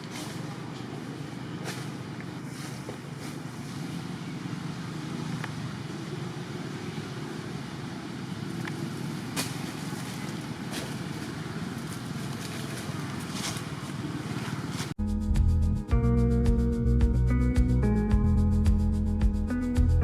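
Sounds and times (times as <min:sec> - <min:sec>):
distant traffic rumble: 0:00.0 - 0:15.0.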